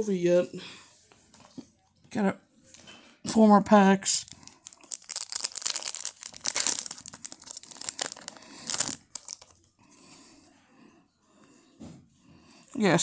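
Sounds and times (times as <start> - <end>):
wrapper being torn and crinkled: 4.2 - 9.7.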